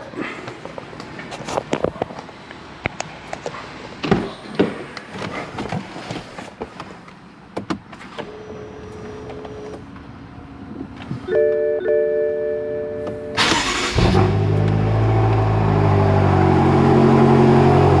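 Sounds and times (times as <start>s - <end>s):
car engine drone: 12.8s - 18.0s.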